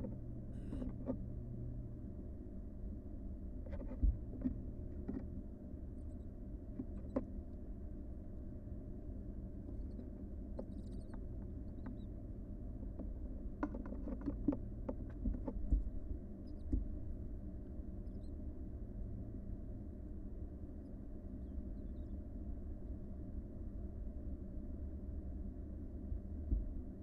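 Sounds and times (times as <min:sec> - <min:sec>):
microphone low hum: 0:02.8 - 0:07.5, 0:09.6 - 0:18.3, 0:25.8 - 0:27.0.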